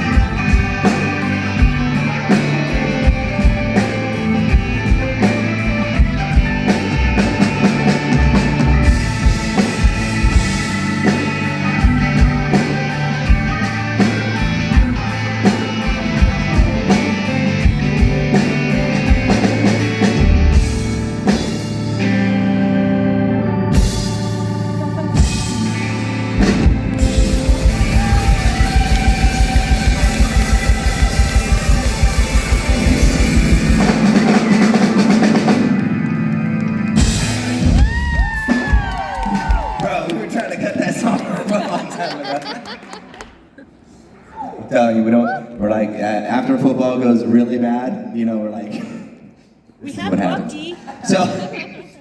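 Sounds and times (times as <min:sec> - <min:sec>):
drum kit beat: 0:00.0 - 0:22.4, 0:23.7 - 0:40.4
rock band playing: 0:00.0 - 0:43.5.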